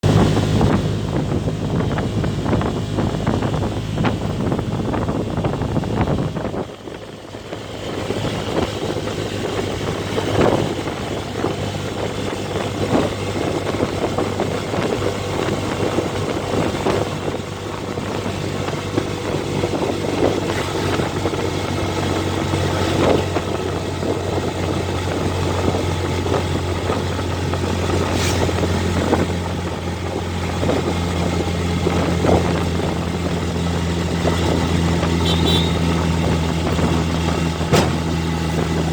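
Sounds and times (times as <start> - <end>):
vehicle engine humming: 0.0 - 38.9
knocks and rattles: 36.3 - 38.9.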